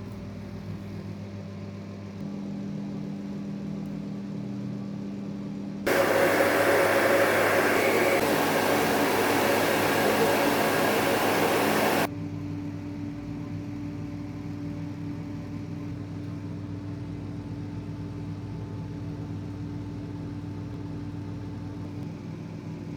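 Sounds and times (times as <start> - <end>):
hair dryer blowing: 5.9 - 12.1
steady low hum: 5.9 - 12.1.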